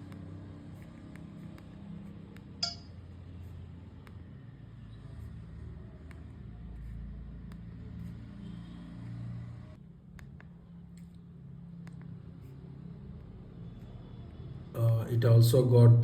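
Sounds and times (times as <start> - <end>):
phone keypad button clicks: 2.6 - 2.9.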